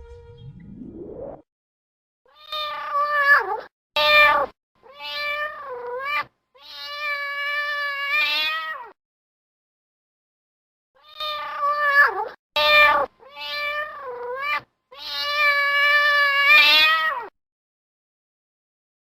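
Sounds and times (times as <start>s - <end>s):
brief rising tone: 0.0s - 1.4s
cat meowing: 2.3s - 9.0s, 11.0s - 17.3s.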